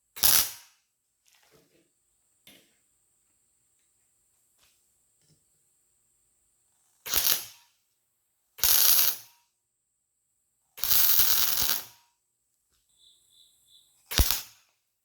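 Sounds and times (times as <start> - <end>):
welder arcing: 0.2 - 0.7, 7.1 - 7.6, 8.6 - 9.3, 10.8 - 11.9, 14.1 - 14.6.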